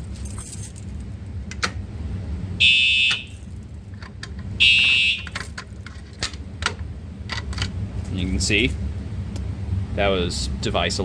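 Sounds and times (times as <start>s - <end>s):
fire alarm horn blasts: 2.6s - 3.4s, 4.6s - 5.3s.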